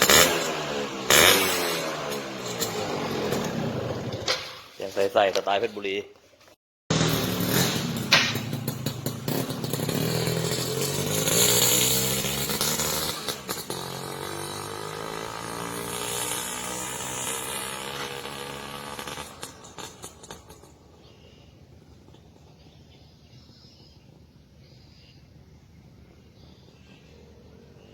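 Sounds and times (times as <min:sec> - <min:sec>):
two-stroke motorcycle revving: 0:00.0 - 0:04.6, 0:06.9 - 0:22.9.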